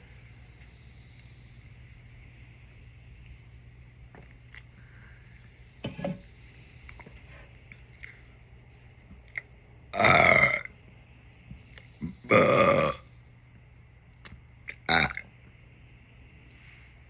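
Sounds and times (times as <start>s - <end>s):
person burping loudly: 10.0s - 10.7s, 12.3s - 13.0s, 14.8s - 15.2s.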